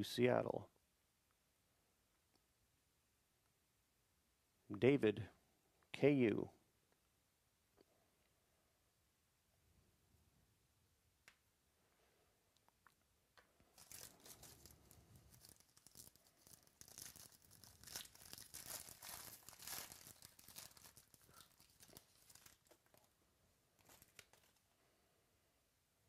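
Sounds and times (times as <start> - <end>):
wrapper crinkling: 13.7 - 23.1, 23.8 - 24.7.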